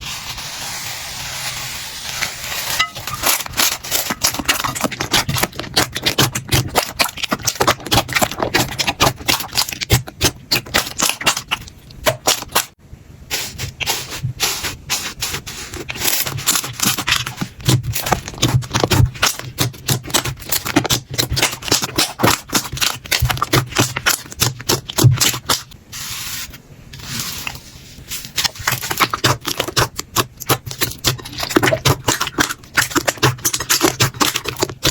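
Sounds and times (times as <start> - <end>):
slime crackling and popping: 2.0 - 12.7, 15.9 - 25.7, 28.3 - 34.9.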